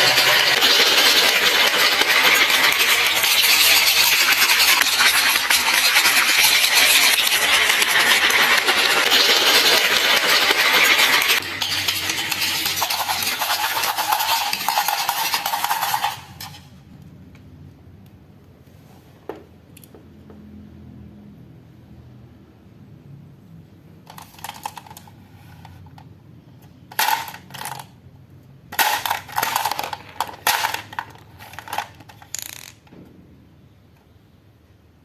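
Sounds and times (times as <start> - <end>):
marbles rolling and clattering: 0.0 - 16.7, 24.1 - 26.0, 26.7 - 28.0, 28.7 - 32.9.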